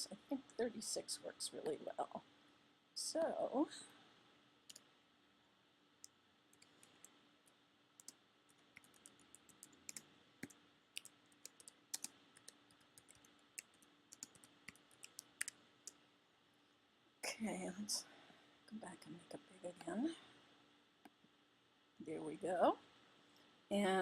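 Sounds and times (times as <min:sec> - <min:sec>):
keyboard typing clicks: 0:08.0 - 0:15.6.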